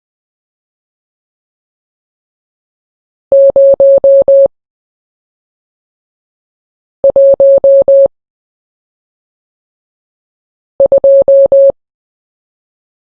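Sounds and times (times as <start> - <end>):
morse code beeps: 3.3 - 4.5, 7.0 - 8.1, 10.8 - 11.8.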